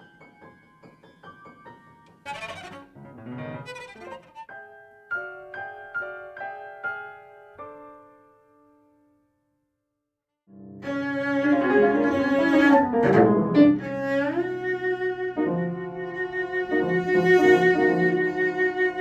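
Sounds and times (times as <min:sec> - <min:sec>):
piano notes and chords: 0:00.0 - 0:09.0
scratchy bowed cello: 0:02.1 - 0:04.6, 0:10.8 - 0:19.0.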